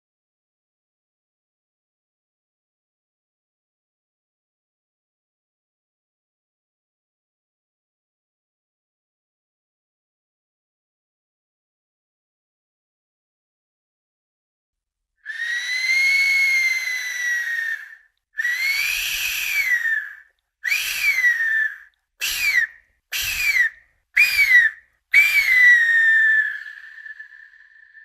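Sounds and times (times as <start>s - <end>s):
breathy high-pitched whistle blasts: 15.2s - 28.0s.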